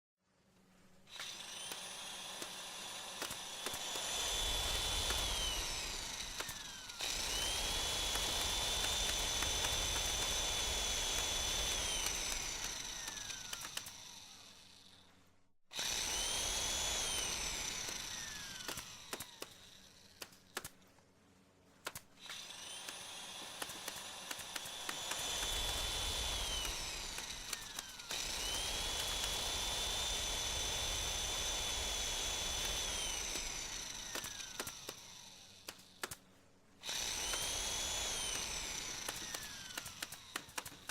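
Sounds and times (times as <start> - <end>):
power drill motor whining: 1.1 - 15.1, 15.7 - 20.6, 22.2 - 36.2, 36.8 - 40.9.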